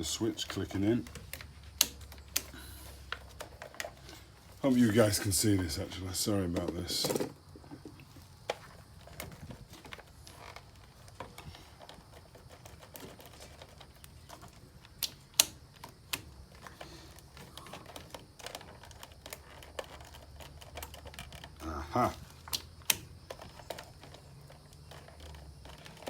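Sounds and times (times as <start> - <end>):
small clicks of wiring connectors: 0.4 - 4.1, 8.5 - 21.6, 22.2 - 26.0.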